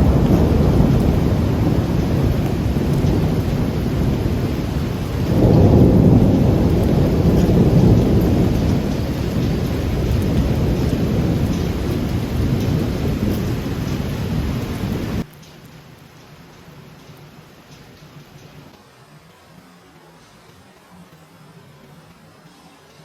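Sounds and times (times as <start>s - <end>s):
thunder rumbling: 0.0s - 15.3s
steady rain: 0.0s - 23.0s.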